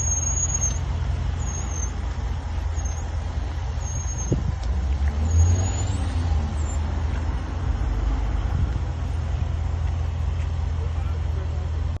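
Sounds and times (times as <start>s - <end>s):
brake chirp: 0.0s - 12.0s
brakes squealing: 0.0s - 12.0s
low rumble of moving vehicle: 0.0s - 12.0s.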